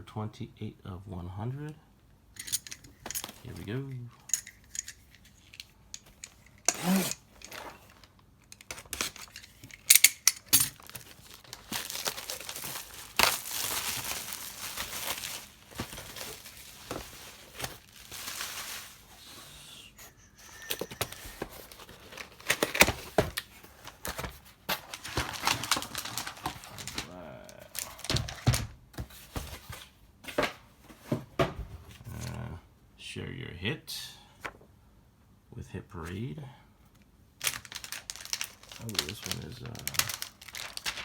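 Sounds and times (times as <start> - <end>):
handling clicks and knocks: 2.4 - 11.1
packaging tearing and crumpling: 6.7 - 19.3, 20.6 - 28.4, 37.4 - 41.0.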